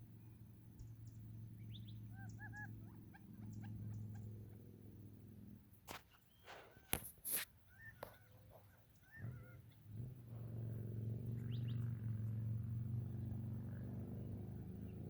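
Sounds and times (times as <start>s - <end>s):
bird chirps: 0.8s - 4.6s, 7.7s - 9.9s, 11.3s - 12.4s
steady low hum: 8.6s - 15.0s.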